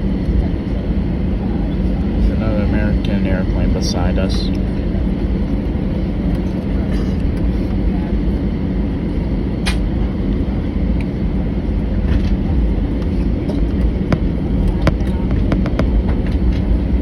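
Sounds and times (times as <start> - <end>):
jet engines low rumble in cabin: 0.0 - 17.0.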